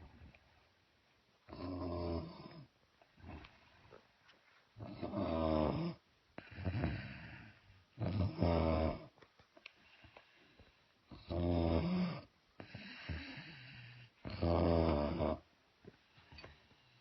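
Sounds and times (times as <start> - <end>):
person snoring: 11.1 - 15.4.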